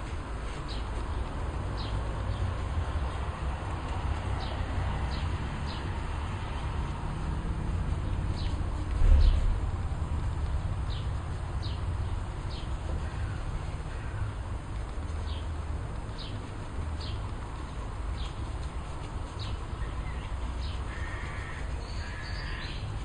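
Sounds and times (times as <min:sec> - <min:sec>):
steady low rumble: 0:00.0 - 0:23.0
thump: 0:09.0 - 0:09.6
small bird chirping: 0:15.1 - 0:23.0.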